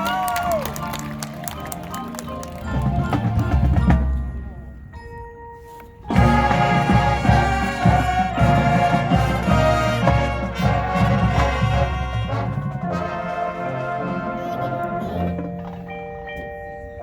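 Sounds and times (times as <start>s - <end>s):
brass section playing chords: 6.1s - 15.4s.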